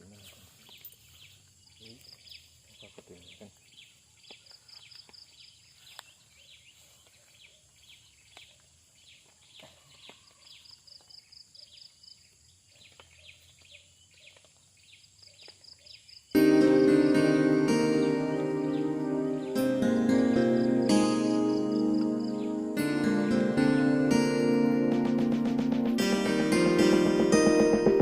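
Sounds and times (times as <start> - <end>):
birds chirping: 0.0 - 10.4, 11.5 - 28.0
loud music: 16.4 - 28.0.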